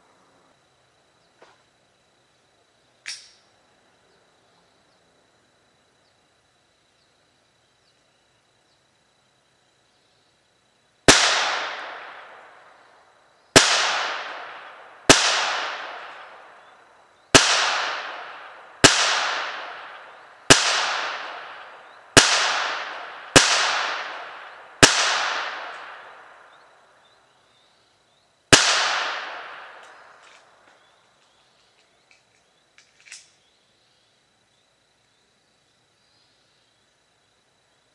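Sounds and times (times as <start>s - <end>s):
pistol shots with echo: 11.1s - 12.6s, 13.6s - 16.7s, 17.3s - 26.6s, 28.5s - 30.2s.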